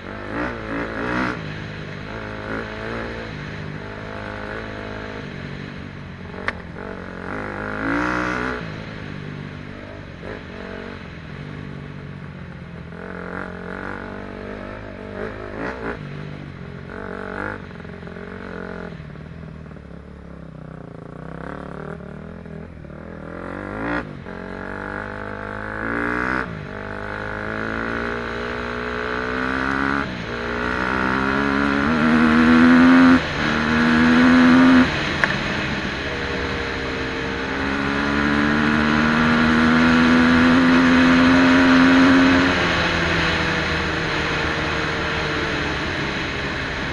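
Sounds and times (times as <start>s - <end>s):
dirt bike engine accelerating: 20.9s - 46.9s.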